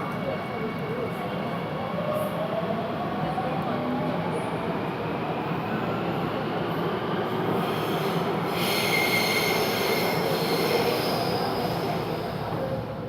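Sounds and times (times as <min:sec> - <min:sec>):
high-pitched wheel squeal: 0:08.6 - 0:11.8.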